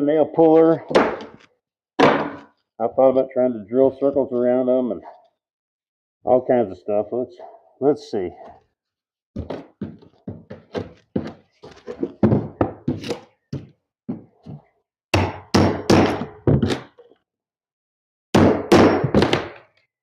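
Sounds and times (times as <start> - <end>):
pry bar knocking on wood: 0.9 - 1.4.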